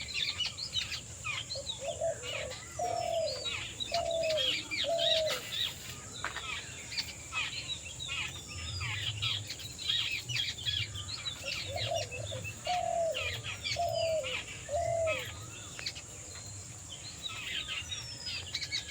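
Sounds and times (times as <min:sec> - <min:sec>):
birds chirping: 0:00.0 - 0:18.9
low falling bird call: 0:01.8 - 0:07.5.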